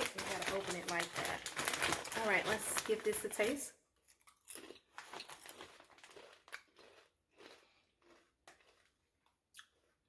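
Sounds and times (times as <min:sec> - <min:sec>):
person chewing crunchy chips: 0:00.0 - 0:03.3, 0:04.0 - 0:10.0.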